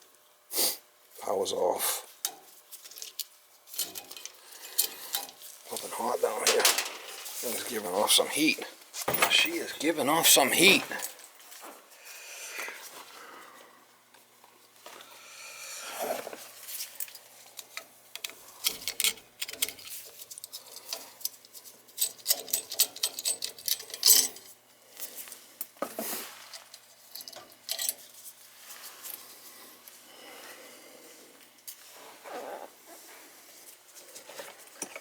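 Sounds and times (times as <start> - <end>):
metal hand tools clinking: 22.0 - 24.5.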